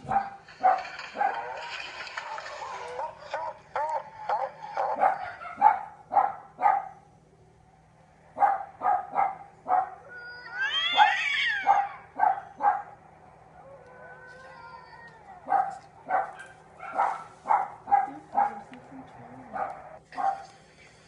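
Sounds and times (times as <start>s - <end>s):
cat meowing: 10.2s - 12.0s, 13.8s - 15.5s.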